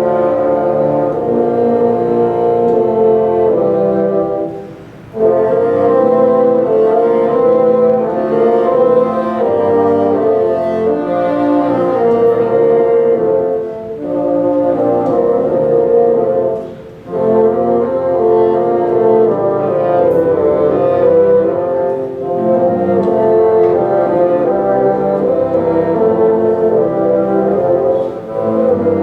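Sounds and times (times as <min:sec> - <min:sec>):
bassoon ensemble playing: 0:00.0 - 0:29.0.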